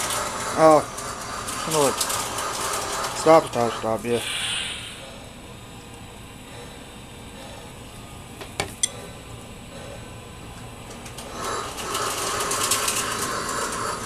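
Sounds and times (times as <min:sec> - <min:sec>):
model train wheels rattling: 0:00.0 - 0:03.8, 0:11.0 - 0:14.0.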